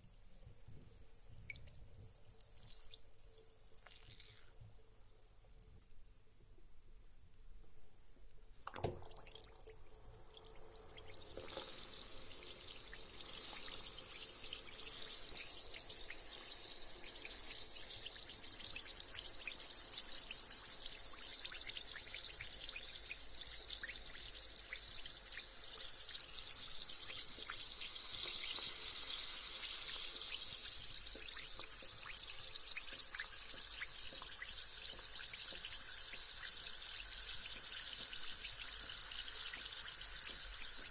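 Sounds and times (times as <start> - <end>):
bath bomb fizzing: 3.8 - 4.6, 10.3 - 40.9.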